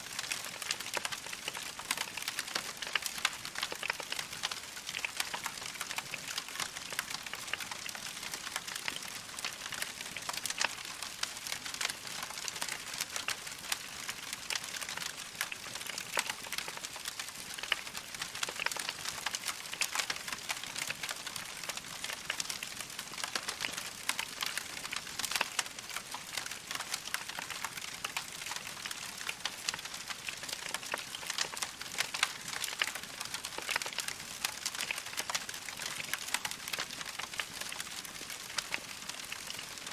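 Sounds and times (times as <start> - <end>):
wood fire crackling: 0.1 - 39.9.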